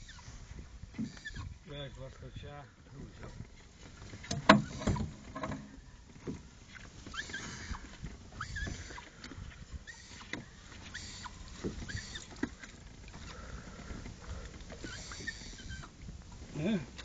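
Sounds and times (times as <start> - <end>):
short high squeaks: 0.0 - 0.4, 1.0 - 1.6, 7.0 - 9.1, 9.8 - 12.7, 14.8 - 16.0
knocks and thuds on boat: 4.2 - 6.5.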